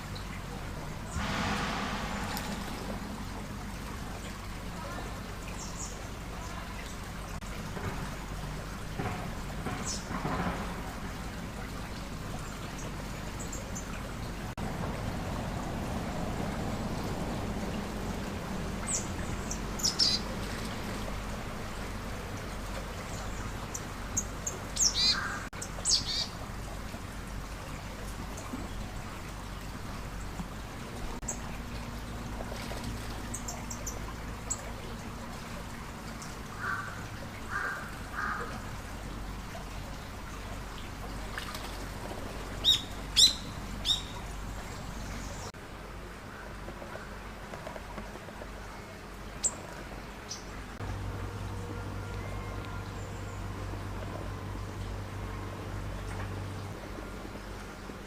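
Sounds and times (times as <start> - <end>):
stream water rushing: 0.0 - 58.0
birds chirping: 4.1 - 7.4, 18.8 - 21.2, 22.4 - 26.4, 42.6 - 45.6.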